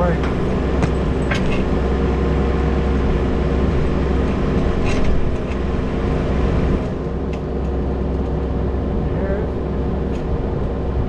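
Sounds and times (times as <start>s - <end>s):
diesel engine running: 0.0s - 11.0s
sharp knocks: 0.8s - 1.7s.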